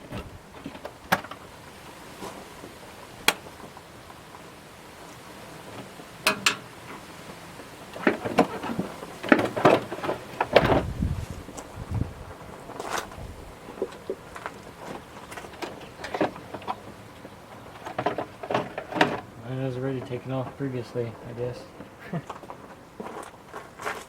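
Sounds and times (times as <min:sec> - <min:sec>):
sharp clicks and knocks: 0:06.2 - 0:07.0
plastic knocks and rattles: 0:08.0 - 0:11.7, 0:17.7 - 0:19.3.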